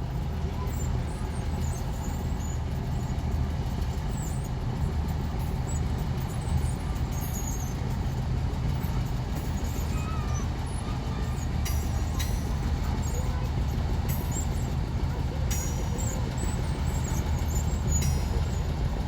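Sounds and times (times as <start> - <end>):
diesel locomotive engine rumbling: 0.0 - 19.0.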